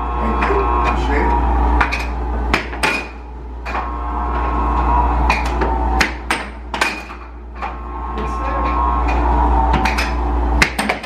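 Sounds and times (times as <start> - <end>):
air blower hum: 0.0 - 11.0
air hockey puck clacking: 5.3 - 7.3, 9.7 - 11.0.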